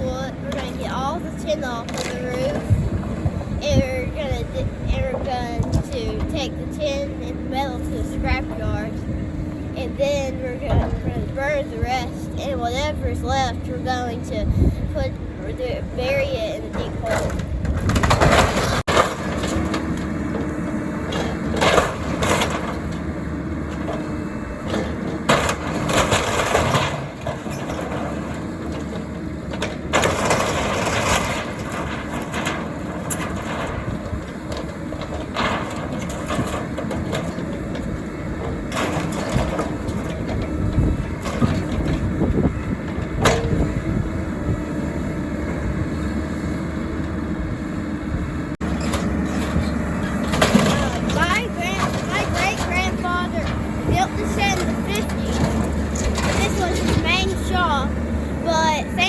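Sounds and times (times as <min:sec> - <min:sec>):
excavator engine running: 0:00.0 - 0:59.0
wooden boards cracking and splintering: 0:17.0 - 0:20.4, 0:24.7 - 0:42.4.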